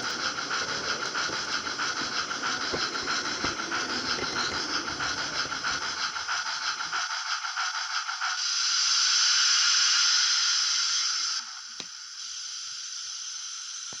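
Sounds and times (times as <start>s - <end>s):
running gear rumbling on track: 0.0s - 8.2s
model steam locomotive chuffing: 0.0s - 14.0s
steam hissing: 0.0s - 14.0s.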